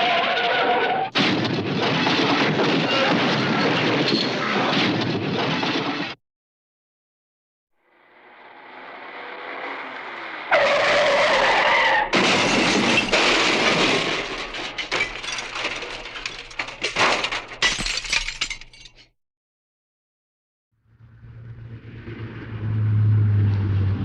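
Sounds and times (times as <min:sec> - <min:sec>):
car crash with shattering glass: 0:09.1 - 0:19.0
tyres screeching: 0:10.5 - 0:13.2
debris and glass clattering: 0:12.1 - 0:19.1.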